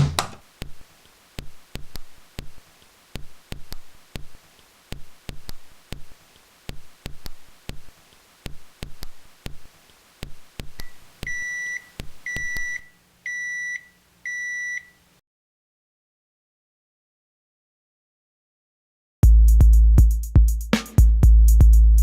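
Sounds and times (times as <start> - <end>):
sharp clicks or taps: 0.0 - 0.8
electronic appliance beeps: 10.7 - 15.0.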